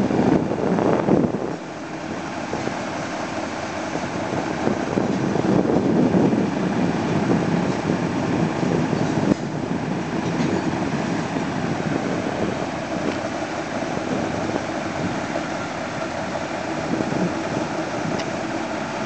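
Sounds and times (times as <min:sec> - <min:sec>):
diesel engines running: 0:00.0 - 0:19.0.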